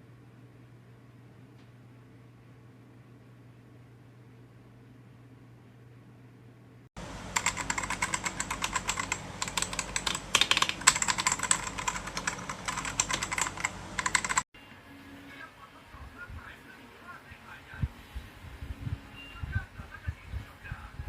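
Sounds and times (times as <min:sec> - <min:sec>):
faint low hum: 0:00.0 - 0:14.4
fast mechanical keyboard typing: 0:07.2 - 0:14.4.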